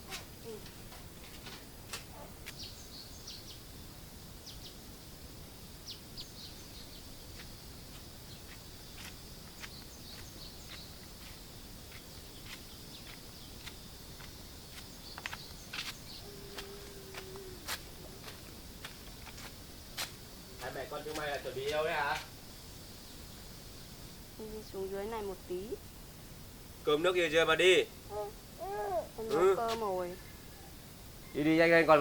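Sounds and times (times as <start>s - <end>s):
high insect drone: 0.0s - 32.0s
bird chirps: 2.1s - 3.7s, 5.8s - 7.2s, 9.6s - 11.3s, 14.9s - 18.1s, 30.2s - 31.6s.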